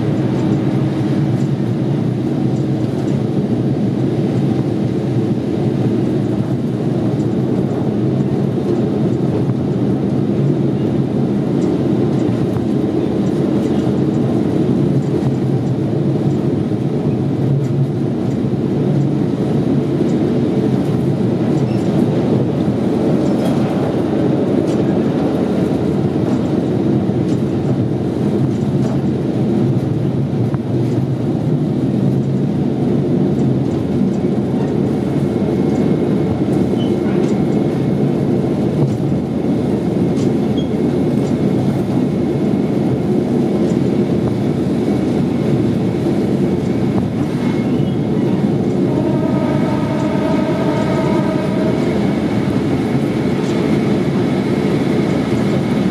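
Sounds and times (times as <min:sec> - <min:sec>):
railcar engine and wheels rumbling: 0:00.0 - 0:55.9
steady tone with overtones: 0:48.0 - 0:55.0.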